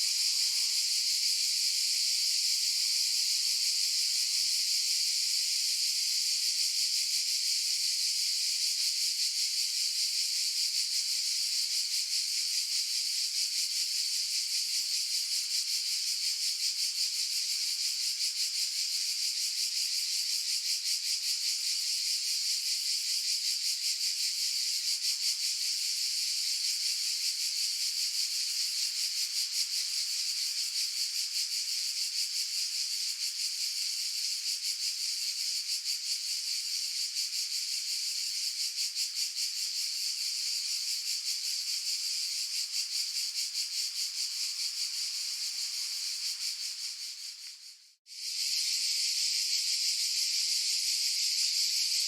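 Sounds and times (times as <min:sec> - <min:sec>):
cicadas buzzing: 0:00.0 - 0:06.1, 0:38.0 - 0:52.0.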